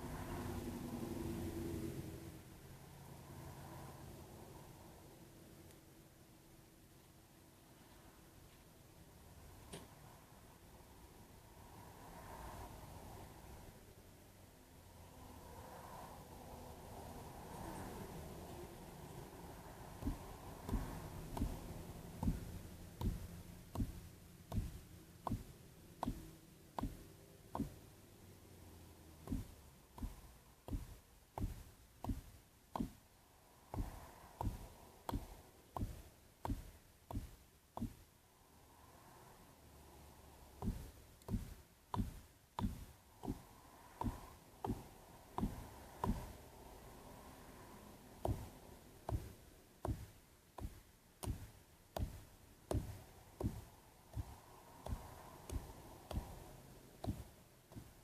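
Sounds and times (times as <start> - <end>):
dull knocks: 20.0 - 27.8, 33.7 - 38.0, 40.6 - 46.4.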